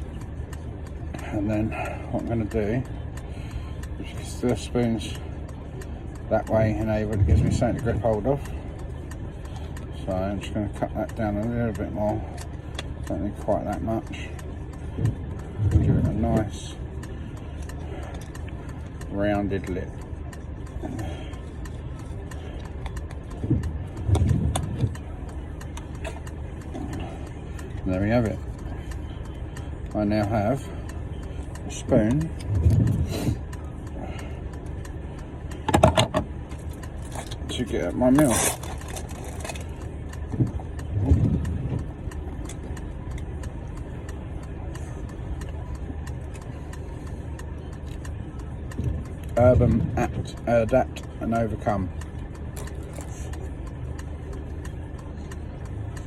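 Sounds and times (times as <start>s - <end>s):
low hum: 0.0s - 56.0s
bumps: 22.7s - 25.1s.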